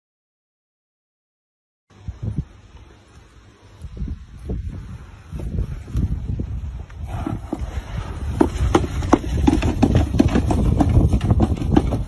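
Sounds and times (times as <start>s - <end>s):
irregular knocks: 8.3s - 12.0s.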